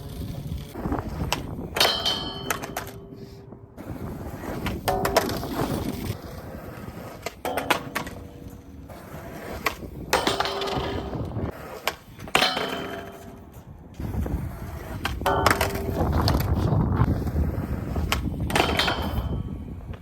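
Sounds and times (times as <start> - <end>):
wind rumble on microphone: 0.0 - 6.6, 9.5 - 11.6, 13.2 - 20.0
skateboard clacking on pavement: 0.0 - 20.0
skateboard ringing: 0.2 - 20.0.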